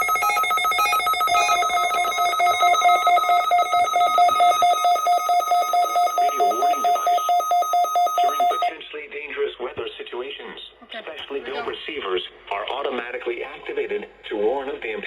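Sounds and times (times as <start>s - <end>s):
pulsing electronic alarm tone: 0.0s - 8.7s
short tones changing pitch: 0.0s - 8.7s.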